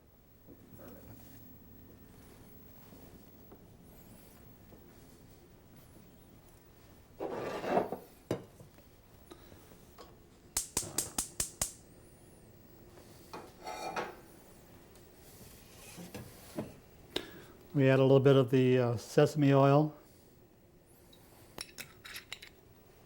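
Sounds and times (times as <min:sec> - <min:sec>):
sharp clicks: 0:10.6 - 0:11.8.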